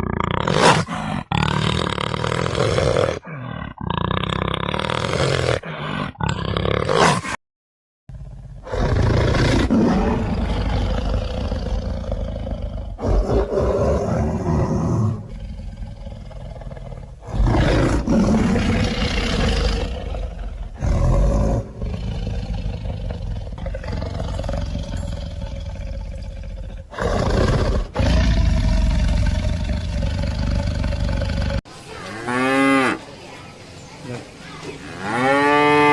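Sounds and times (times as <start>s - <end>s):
big cat roaring: 8.1s - 31.6s.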